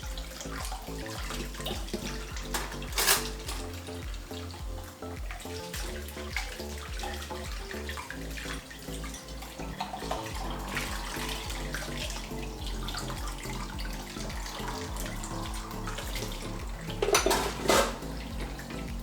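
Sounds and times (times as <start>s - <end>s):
tap running into sink: 0.0s - 8.7s, 9.8s - 19.0s
crockery and cutlery clinking: 1.8s - 3.7s, 17.0s - 19.0s.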